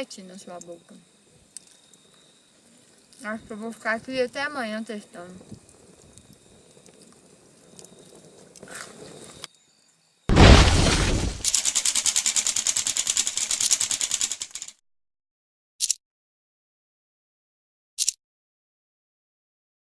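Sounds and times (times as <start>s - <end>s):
faint outdoor background: 0.0s - 14.7s
loud crash: 10.3s - 11.5s
fast even rattling: 10.3s - 14.8s.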